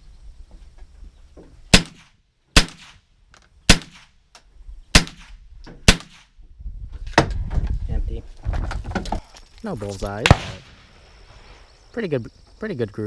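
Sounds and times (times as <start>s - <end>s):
rifle shots: 1.7s - 3.0s, 3.7s - 4.2s, 4.9s - 6.3s, 10.2s - 10.9s.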